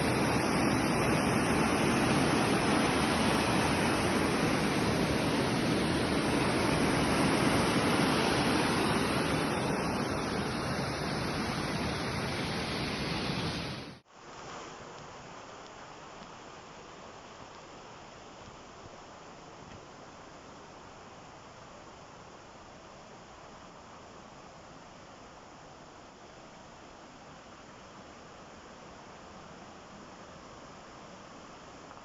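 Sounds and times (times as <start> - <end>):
waterfall rushing: 0.0 - 15.3.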